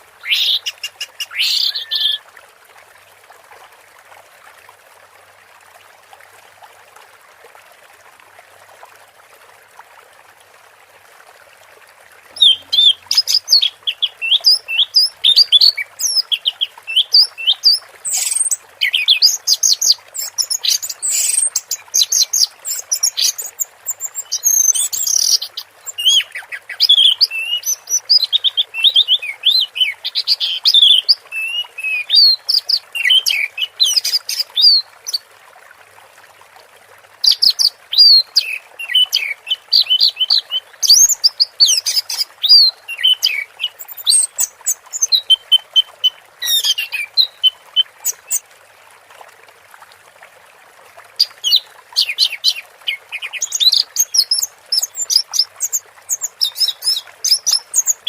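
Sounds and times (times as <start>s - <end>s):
faint hiss of flowing water: 0.0s - 58.0s
thrush singing high whistles: 1.2s - 2.2s.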